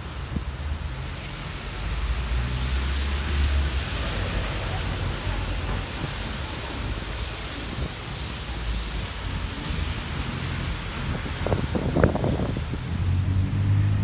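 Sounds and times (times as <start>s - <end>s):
rain: 0.0s - 14.0s
wet traffic noise: 0.0s - 14.0s
wind on microphone: 5.5s - 14.0s.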